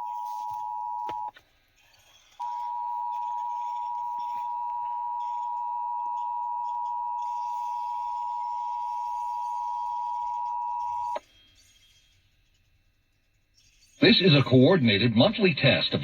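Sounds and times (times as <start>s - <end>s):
two-tone alert signal: 0.0s - 1.3s, 2.4s - 11.2s.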